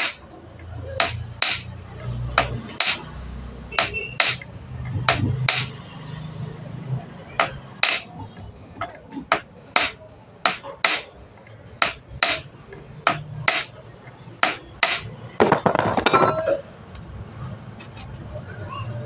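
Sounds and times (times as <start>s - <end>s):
hammer striking metal: 3.8s - 4.4s, 7.4s - 8.1s, 14.4s - 16.6s
ringing metal clink: 16.0s - 16.6s.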